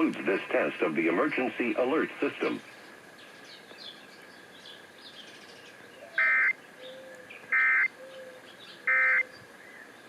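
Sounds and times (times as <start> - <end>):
two-tone digital data bursts: 6.2 - 6.6, 7.5 - 7.9, 8.9 - 9.2.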